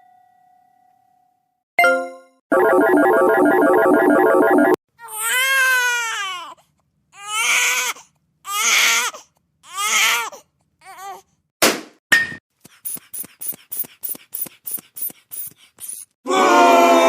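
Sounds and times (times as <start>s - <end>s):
baby crying: 5.0s - 6.6s, 7.2s - 11.3s.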